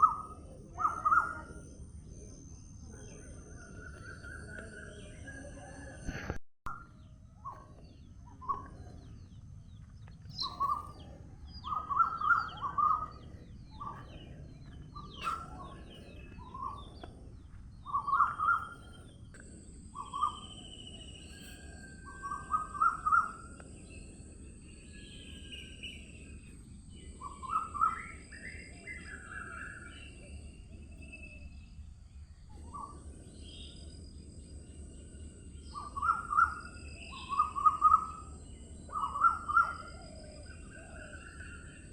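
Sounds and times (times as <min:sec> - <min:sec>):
low steady hum: 0:00.0 - 0:41.9
birds calling: 0:07.4 - 0:31.4, 0:32.5 - 0:41.9.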